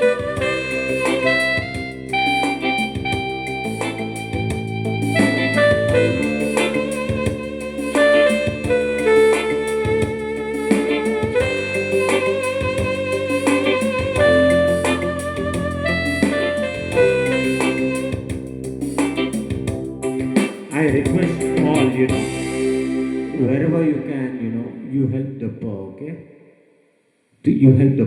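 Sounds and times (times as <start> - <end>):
wavering held melody: 0.0 - 20.2, 21.1 - 25.0
low sustained chords: 21.5 - 25.1.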